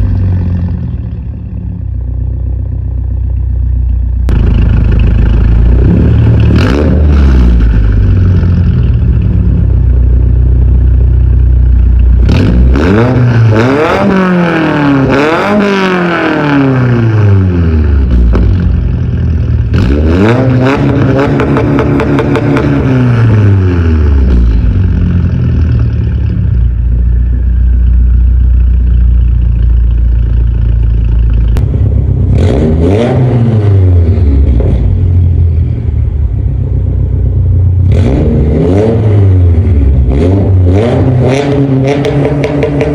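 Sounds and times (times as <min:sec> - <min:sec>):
car engine idling and revving: 0:00.0 - 0:42.9.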